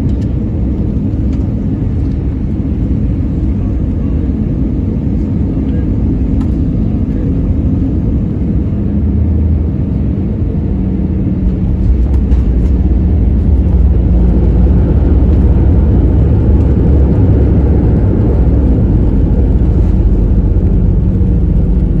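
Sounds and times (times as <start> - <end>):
jet engines rumbling: 0.0 - 22.0.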